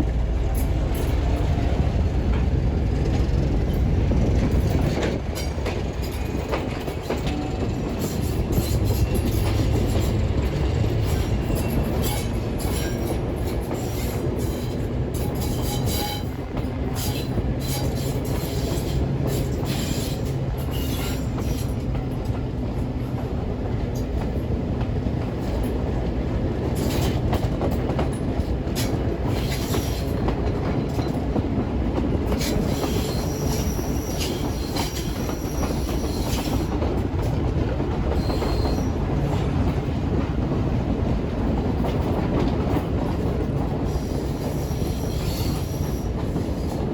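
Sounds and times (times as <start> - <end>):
train rumbling on rails: 0.0 - 46.9
high wheel squeal: 7.3 - 13.2, 17.0 - 21.8, 32.4 - 36.7, 38.2 - 39.1, 43.9 - 46.2.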